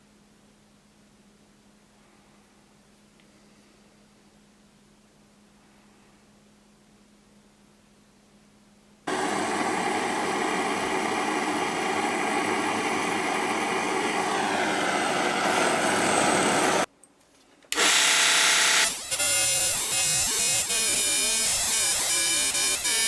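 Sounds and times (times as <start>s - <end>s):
electric power tool running: 9.1s - 16.9s, 17.8s - 23.0s.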